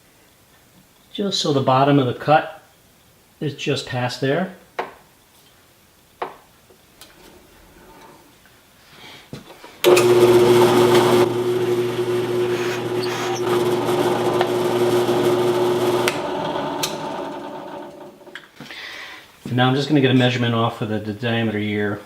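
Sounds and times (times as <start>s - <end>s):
drill press humming: 9.9s - 18.4s
drill press winding down: 9.9s - 18.4s.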